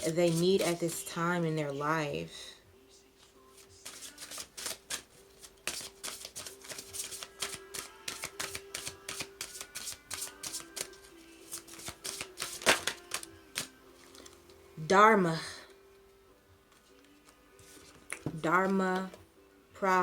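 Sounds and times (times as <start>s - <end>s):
cards being shuffled: 0.0s - 1.0s, 3.6s - 14.4s, 16.7s - 19.2s
faint background music: 0.0s - 20.0s.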